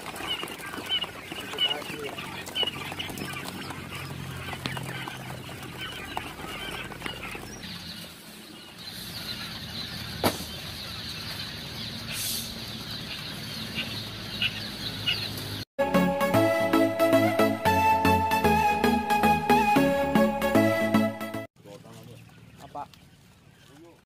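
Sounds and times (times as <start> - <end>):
birds rustling: 0.0 - 15.6, 21.6 - 24.0
quail chirping: 0.0 - 15.6, 20.1 - 24.0.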